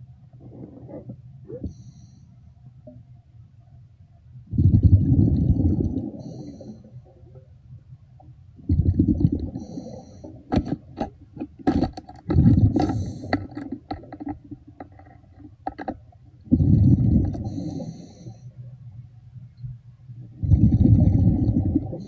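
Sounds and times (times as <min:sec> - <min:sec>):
underwater exhaled air bubbling: 0:04.5 - 0:07.4, 0:08.6 - 0:10.5, 0:12.3 - 0:13.4, 0:16.4 - 0:18.3, 0:20.2 - 0:22.0
sharp clicks and knocks: 0:10.5 - 0:16.2.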